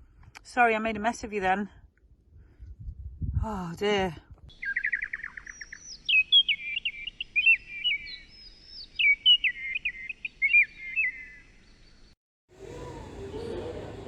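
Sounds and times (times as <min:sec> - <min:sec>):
small bird chirping: 0:04.5 - 0:12.2.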